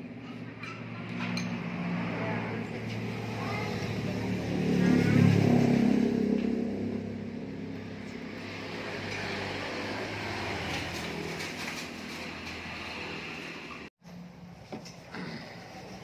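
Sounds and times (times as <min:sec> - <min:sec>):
vehicle engine passing by: 0:00.3 - 0:13.9.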